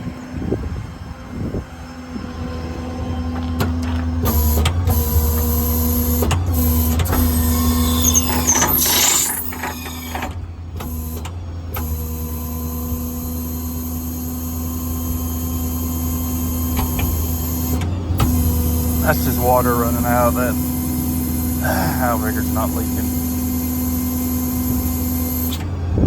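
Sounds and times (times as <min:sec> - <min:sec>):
hydraulic pump hum and whine: 0:00.0 - 0:26.0
hydraulic hiss: 0:07.2 - 0:10.4.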